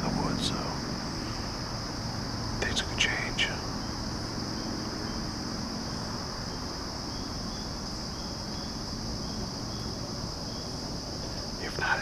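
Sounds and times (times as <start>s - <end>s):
crickets trilling: 0.0s - 12.0s
faint short insect chirps: 0.0s - 12.0s.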